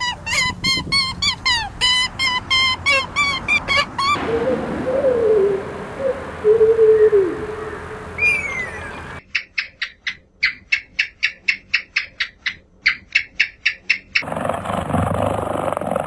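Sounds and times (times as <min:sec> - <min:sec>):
rapid sharp animal chirps: 0:00.0 - 0:04.4, 0:08.2 - 0:09.2
animal falling whistle: 0:00.0 - 0:09.2
loud low sound: 0:04.1 - 0:09.1.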